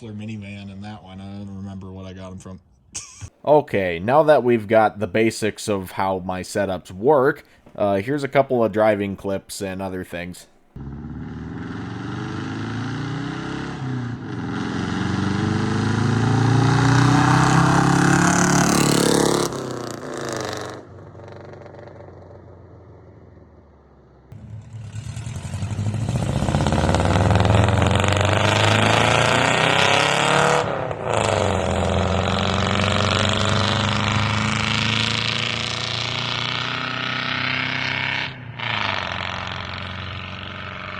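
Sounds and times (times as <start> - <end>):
car engine accelerating hard: 10.8 - 21.8, 24.2 - 40.9.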